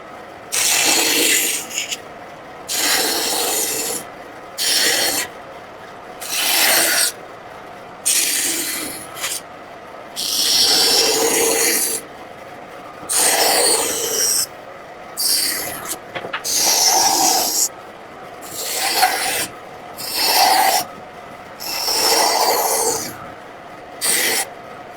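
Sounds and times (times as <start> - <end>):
hand tool rasping across wood: 0.6 - 2.0, 2.7 - 4.0, 4.6 - 5.3, 6.2 - 7.2, 8.1 - 9.4, 10.2 - 12.0, 13.1 - 14.5, 15.2 - 17.7, 18.4 - 20.9, 21.6 - 23.2, 24.0 - 24.5.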